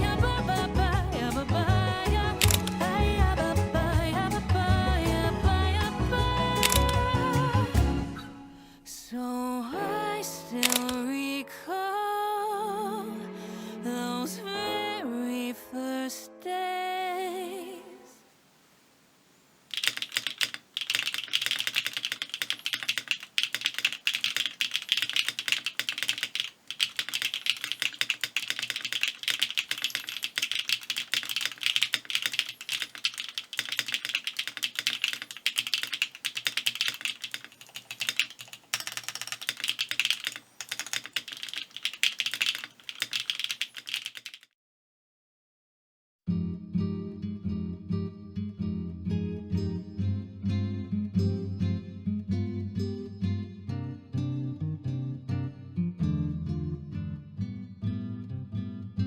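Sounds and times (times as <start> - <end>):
music: 0.0 - 8.9, 9.6 - 10.6, 11.2 - 18.1, 46.3 - 59.0
mechanical keyboard typing: 2.4 - 3.0, 6.6 - 7.2, 10.6 - 11.0, 19.7 - 44.5.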